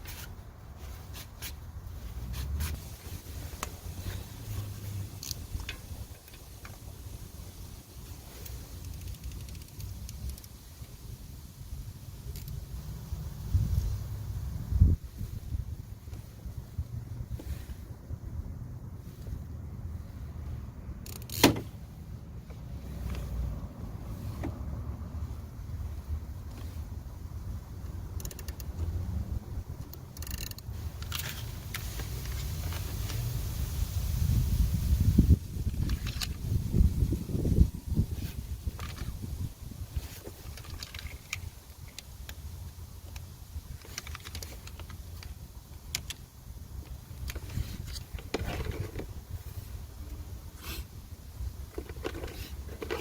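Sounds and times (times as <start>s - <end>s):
light mechanical clicks and rattles: 0.0s - 7.2s, 8.0s - 11.2s, 12.2s - 12.8s, 21.0s - 23.4s, 25.8s - 33.4s, 35.6s - 36.8s, 37.9s - 50.3s, 51.4s - 53.0s
engine rumbling: 0.0s - 53.0s.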